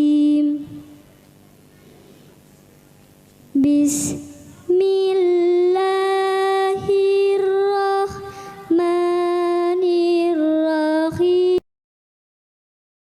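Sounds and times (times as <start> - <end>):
person reciting melodically: 3.6 - 11.6.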